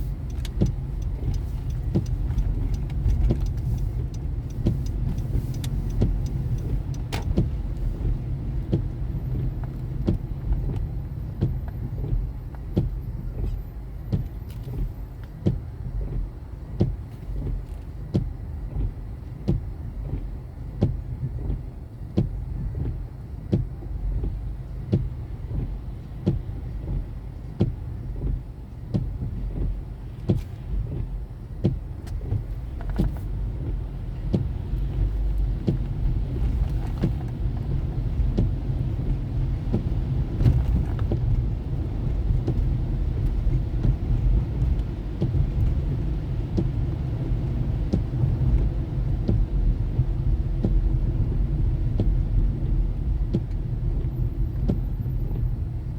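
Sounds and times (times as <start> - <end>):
car engine and road noise: 0.0 - 55.9
regular sharp tick: 0.1 - 11.8.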